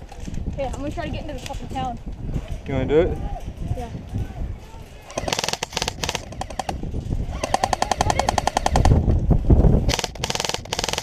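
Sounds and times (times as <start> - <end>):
airsoft gun firing bursts: 5.1 - 9.0, 9.9 - 11.0.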